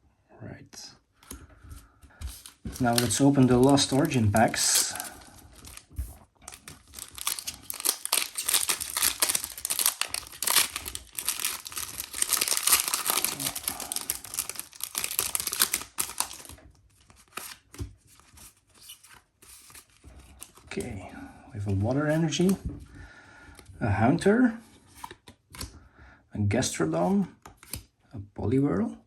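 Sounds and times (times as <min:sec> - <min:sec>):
foil wrapper tearing and crinkling: 0:02.4 - 0:05.9, 0:06.5 - 0:17.8.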